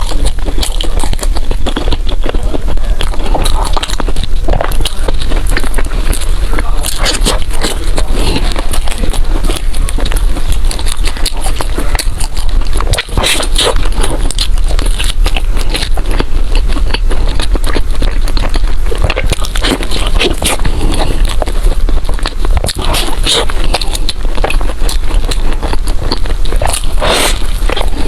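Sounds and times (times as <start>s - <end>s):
close chewing of food: 0.0s - 28.0s.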